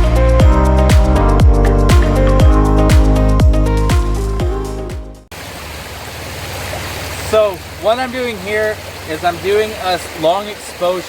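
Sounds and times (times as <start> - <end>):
electronic dance music: 0.0 - 5.2
kick drum beat: 0.0 - 5.2
held synth notes: 0.0 - 5.3.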